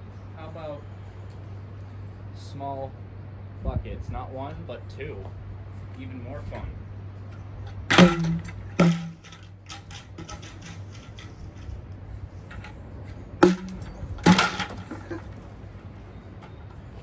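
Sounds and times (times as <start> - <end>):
light knocks and clatter: 7.4 - 11.8
buckets being hit hard: 7.9 - 11.2, 13.4 - 15.3.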